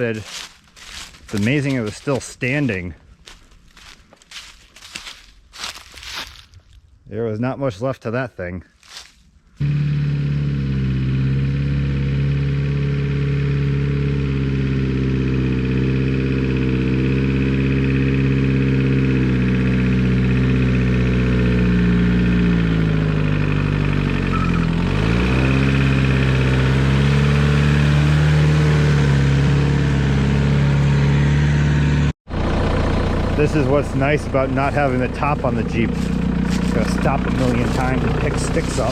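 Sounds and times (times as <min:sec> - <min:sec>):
jeep engine running: 0:00.0 - 0:05.8, 0:09.6 - 0:38.9.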